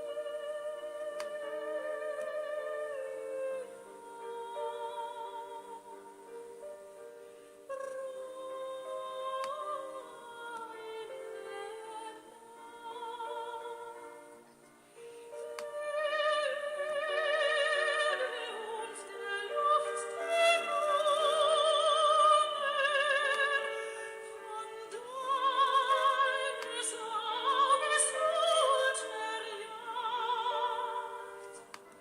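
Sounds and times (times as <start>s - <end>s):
operatic high voice singing: 15.6s - 31.4s.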